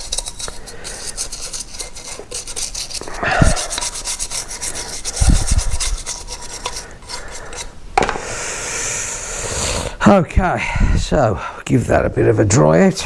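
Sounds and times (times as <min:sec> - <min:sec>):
rapid scrubbing strokes: 0:00.0 - 0:07.8.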